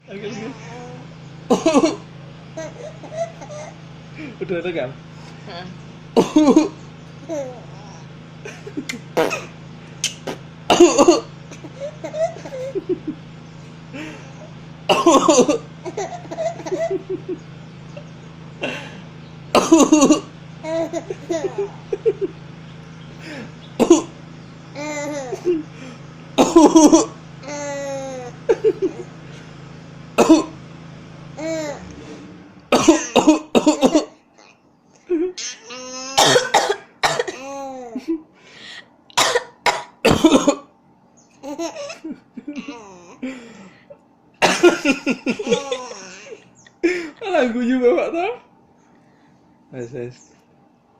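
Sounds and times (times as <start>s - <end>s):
adult coughing: 1.5s - 2.1s, 6.2s - 6.8s, 8.5s - 9.6s, 10.7s - 12.5s, 14.9s - 15.7s, 19.6s - 20.3s, 23.3s - 24.1s, 26.4s - 27.2s, 30.2s - 30.6s, 32.7s - 34.2s, 36.2s - 37.5s, 39.2s - 40.7s, 44.4s - 45.7s
baby laughing: 2.6s - 3.8s, 6.3s - 9.5s, 10.1s - 13.2s, 14.0s - 17.4s, 19.7s - 22.3s, 24.8s - 25.7s, 26.5s - 29.1s, 31.4s - 31.8s, 34.4s - 36.4s, 37.3s - 38.2s, 41.4s - 43.2s, 44.6s - 46.5s.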